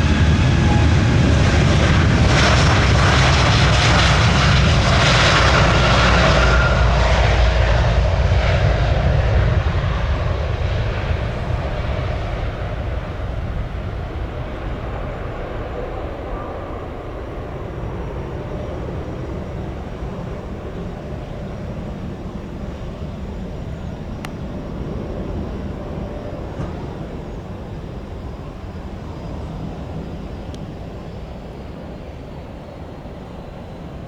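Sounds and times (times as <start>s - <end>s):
jet engines running: 0.0s - 34.0s.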